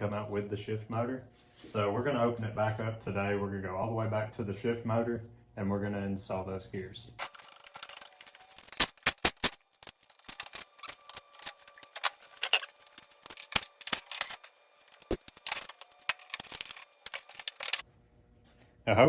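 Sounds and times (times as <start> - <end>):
parts clicking and tapping: 7.2 - 17.8.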